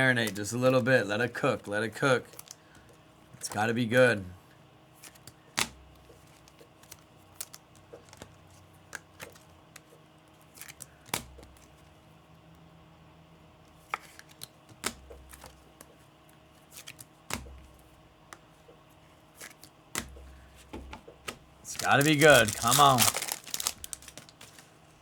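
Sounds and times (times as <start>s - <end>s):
fingers handling card pack: 0.1s - 3.7s, 5.0s - 11.8s, 13.8s - 16.0s, 16.6s - 18.4s, 19.4s - 24.8s.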